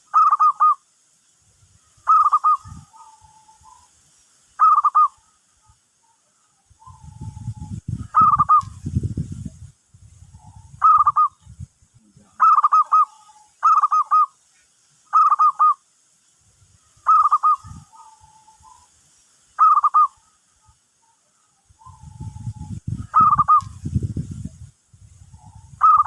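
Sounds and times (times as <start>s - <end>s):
dove cooing: 0.0s - 0.8s, 2.1s - 3.8s, 4.6s - 5.4s, 6.0s - 8.8s, 10.3s - 11.4s, 12.4s - 14.3s, 15.2s - 15.8s, 17.0s - 18.8s, 19.6s - 20.4s, 21.8s - 23.8s, 25.3s - 26.0s.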